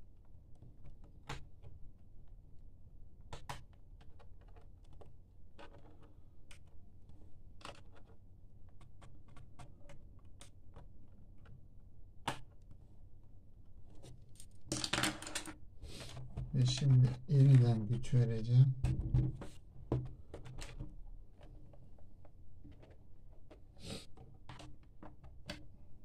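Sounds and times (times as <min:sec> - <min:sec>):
laptop parts clicking and tapping: 0:03.2 - 0:11.6, 0:19.4 - 0:25.9.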